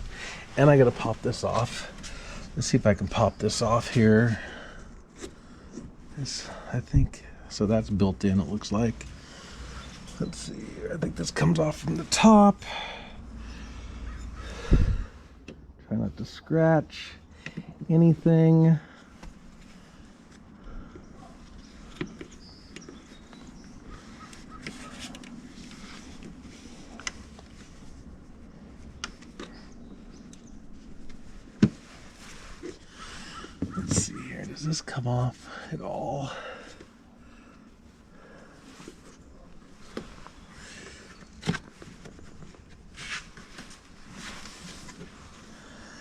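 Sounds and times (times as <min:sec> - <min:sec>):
soft rustling and scraping: 0:00.0 - 0:12.5, 0:13.2 - 0:46.0.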